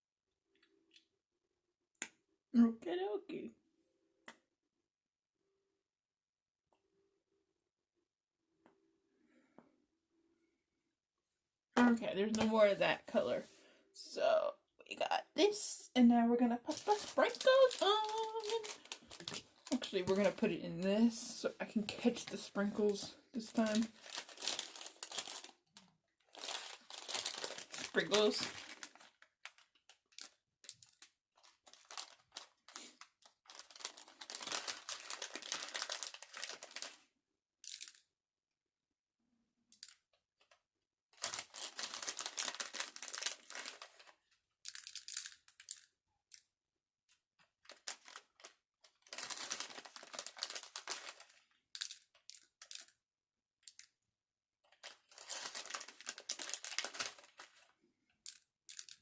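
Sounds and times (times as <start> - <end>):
sprinkles being shaken out: 16.7 - 20.6, 22.3 - 25.5, 26.3 - 29.5, 54.9 - 57.6
plastic packaging crinkling: 16.7 - 37.0, 41.2 - 45.9, 47.6 - 52.9, 54.7 - 57.7.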